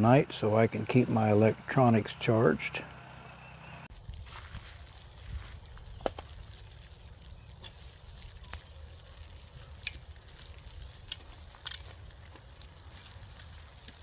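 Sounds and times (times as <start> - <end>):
campfire crackling and popping: 3.6 - 14.0.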